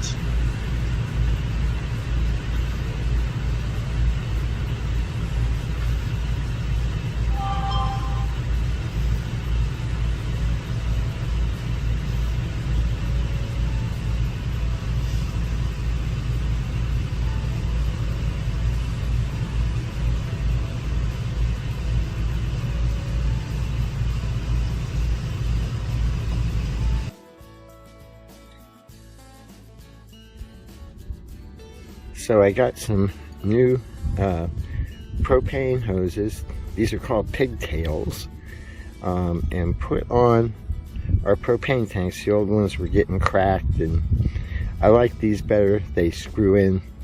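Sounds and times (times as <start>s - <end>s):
brief pitched tone: 7.3s - 8.5s.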